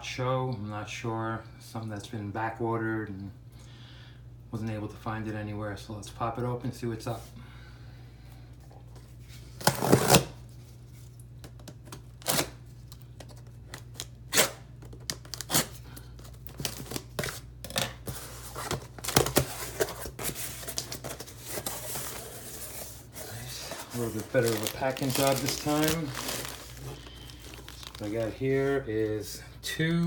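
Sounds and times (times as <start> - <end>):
cardboard box tearing and rustling: 9.6 - 10.4, 18.1 - 28.3.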